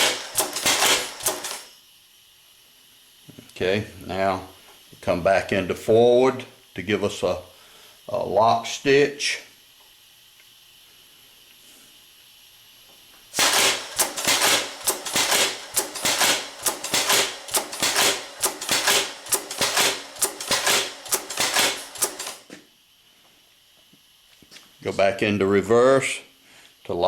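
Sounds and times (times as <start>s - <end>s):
sewing machine clacking: 0.0s - 1.7s, 13.4s - 22.4s.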